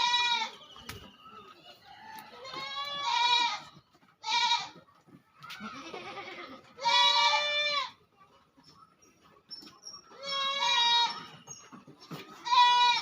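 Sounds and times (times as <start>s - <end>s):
goats bleating: 0.0s - 0.6s, 2.3s - 8.0s, 10.1s - 11.4s, 12.3s - 13.0s.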